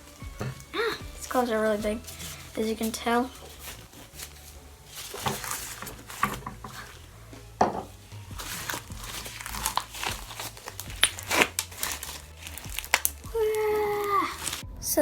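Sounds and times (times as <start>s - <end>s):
slime crackling and crunching: 0.0s - 14.6s
slime popping: 8.3s - 14.6s.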